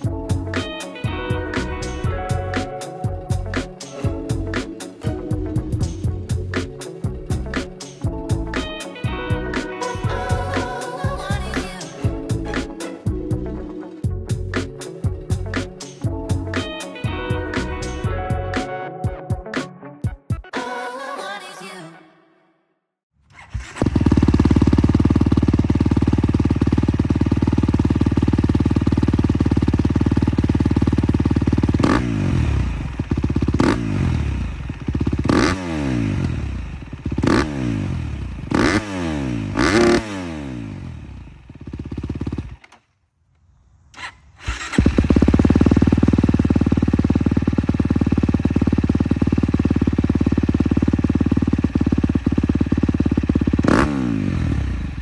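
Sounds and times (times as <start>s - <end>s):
motorcycle engine idling and revving: 0.0s - 18.5s, 23.3s - 42.9s, 44.4s - 55.0s.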